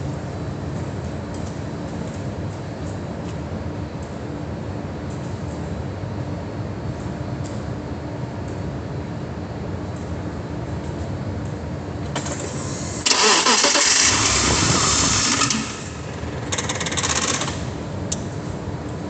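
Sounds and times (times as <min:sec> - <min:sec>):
engine cranking: 0:13.0 - 0:17.6.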